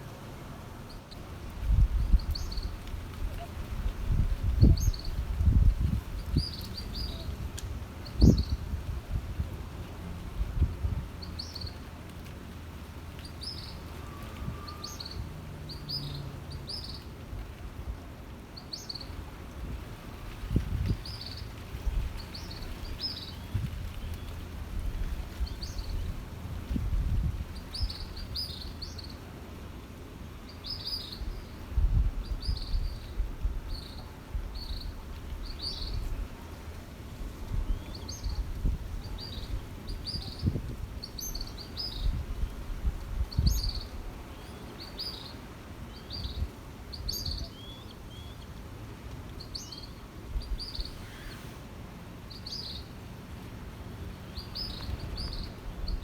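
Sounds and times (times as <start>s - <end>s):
wind rumble on microphone: 1.2s - 18.2s, 19.1s - 29.0s, 30.6s - 51.9s, 53.4s - 56.0s
birds chirping: 49.4s - 51.7s.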